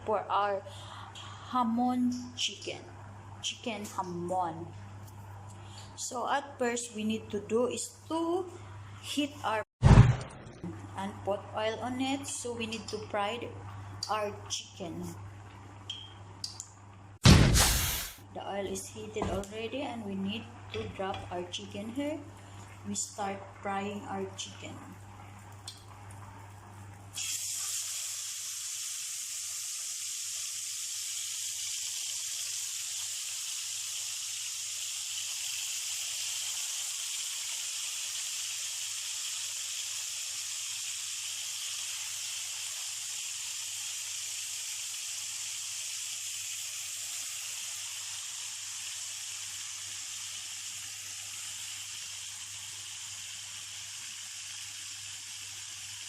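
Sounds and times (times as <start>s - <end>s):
chicken sizzling in hot oil: 24.4s - 56.0s.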